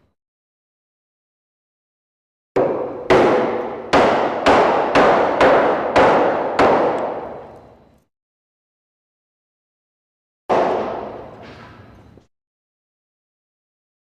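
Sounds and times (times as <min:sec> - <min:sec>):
echoing hammer strikes: 0:02.6 - 0:07.8, 0:10.5 - 0:11.8.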